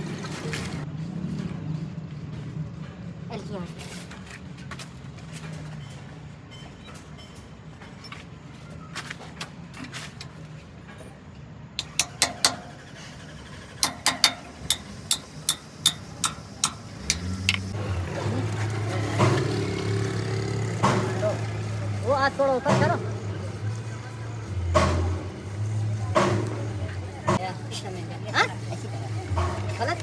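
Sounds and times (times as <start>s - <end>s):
sharp knocks: 11.8s - 12.8s, 13.8s - 17.8s.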